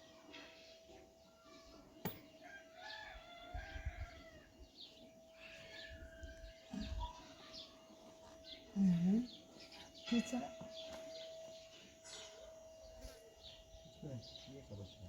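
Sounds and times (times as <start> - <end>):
rooster crowing: 2.4 - 4.6.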